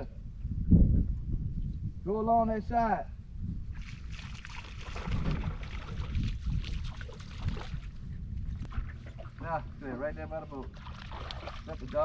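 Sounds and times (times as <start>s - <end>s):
water splashing around boat: 3.8s - 8.0s, 8.6s - 9.8s, 10.5s - 12.0s.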